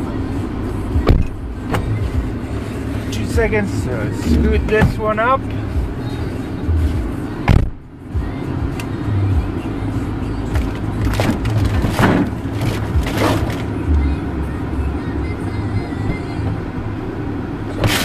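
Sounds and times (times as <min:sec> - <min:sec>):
refrigerator scraping along: 0:11.2 - 0:13.7.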